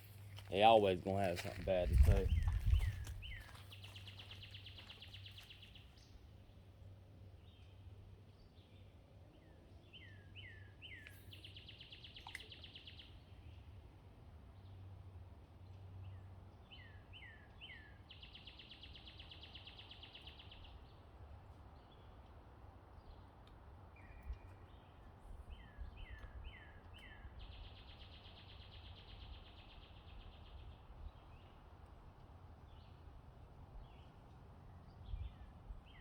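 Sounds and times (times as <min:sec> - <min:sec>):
songbird singing with trill: 0:02.2 - 0:05.7, 0:09.8 - 0:13.1, 0:16.7 - 0:20.8, 0:25.5 - 0:31.5.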